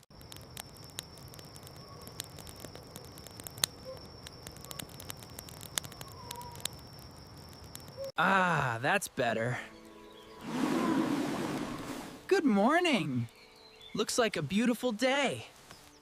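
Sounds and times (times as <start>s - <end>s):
campfire crackling and popping: 0.0s - 16.0s
night insects trilling: 0.1s - 11.9s.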